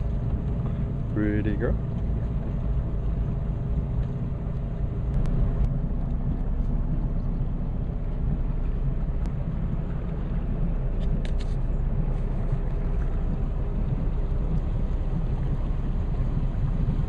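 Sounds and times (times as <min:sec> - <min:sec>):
motorboat engine running: 0:00.0 - 0:17.0
water noise: 0:00.0 - 0:17.0
wind: 0:00.0 - 0:17.0.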